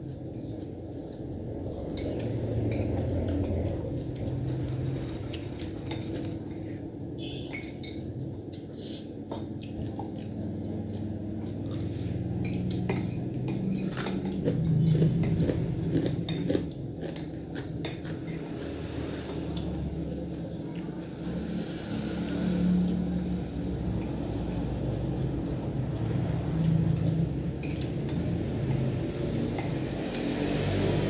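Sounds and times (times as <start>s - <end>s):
chewing: 8.4s - 19.8s.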